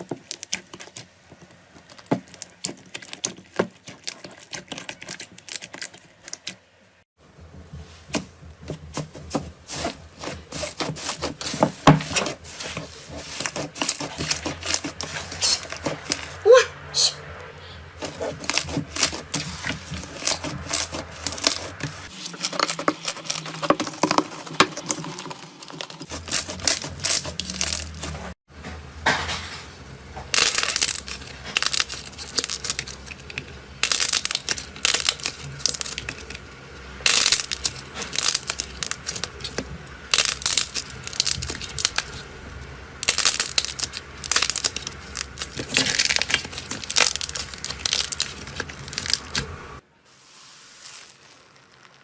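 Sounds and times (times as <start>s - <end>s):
slime crackling and popping: 25.8s - 28.1s, 30.3s - 36.4s, 37.0s - 42.3s, 43.0s - 49.5s, 50.8s - 52.0s.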